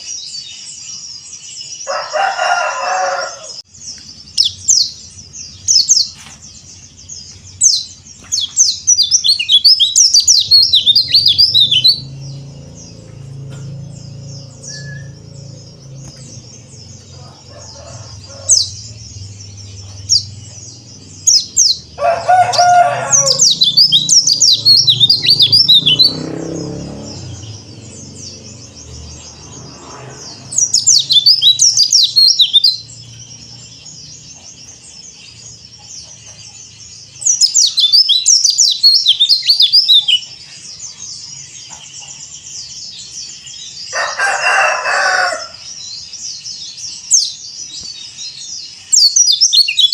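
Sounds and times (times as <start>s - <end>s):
bird twittering song: 0.0s - 49.9s.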